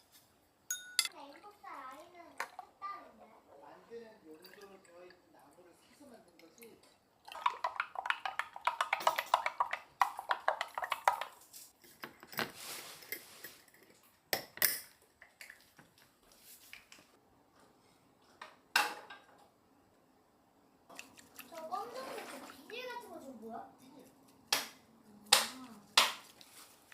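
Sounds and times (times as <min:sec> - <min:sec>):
spoon clinking against bowl: 0:00.7 - 0:01.2.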